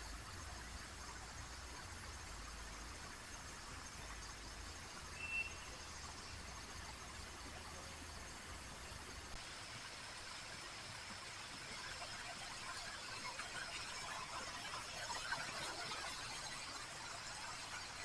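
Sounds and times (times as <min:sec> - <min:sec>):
stream trickling: 0:00.0 - 0:18.0
insects trilling: 0:04.1 - 0:09.3.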